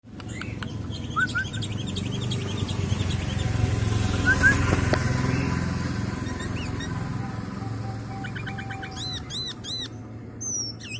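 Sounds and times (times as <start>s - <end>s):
songbird chirping and whistling: 0.3s - 3.4s, 4.2s - 4.6s, 6.2s - 10.9s.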